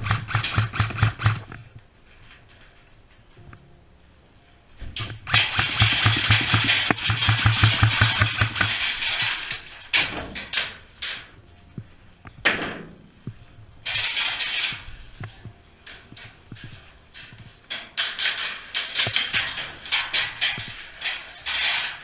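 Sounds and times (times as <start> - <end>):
airsoft gun full-auto firing: 0.0 - 1.5, 5.2 - 9.3.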